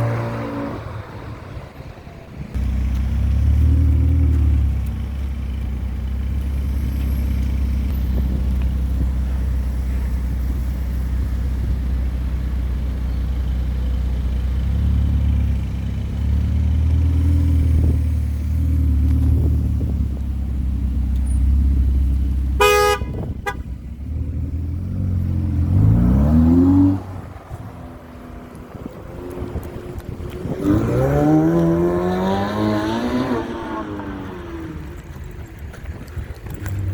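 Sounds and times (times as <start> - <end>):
car engines in street traffic: 0.0 - 36.9
car horn tooting: 22.6 - 23.7
engine revving up hard: 30.6 - 34.7.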